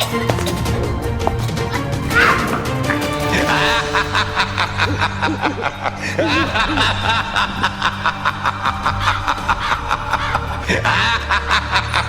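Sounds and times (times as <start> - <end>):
person snickering: 3.2 - 12.0.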